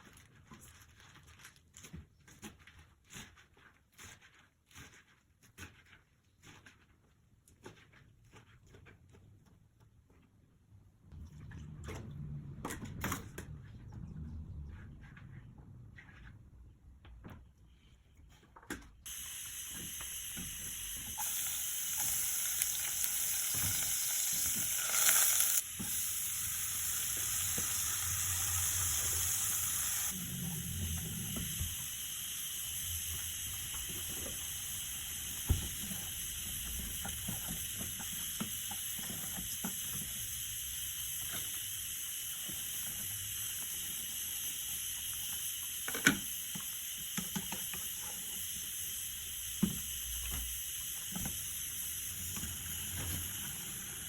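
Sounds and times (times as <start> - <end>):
food sizzling in a pan: 19.1 - 54.0.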